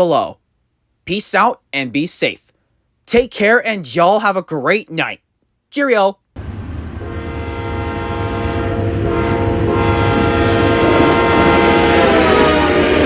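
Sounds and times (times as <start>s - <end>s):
train air horn chord: 6.4s - 13.0s
train rumble: 6.4s - 13.0s.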